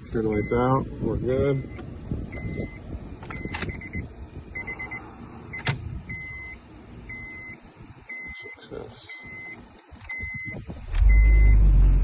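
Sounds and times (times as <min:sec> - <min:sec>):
high electronic beeps: 0:02.4 - 0:11.6.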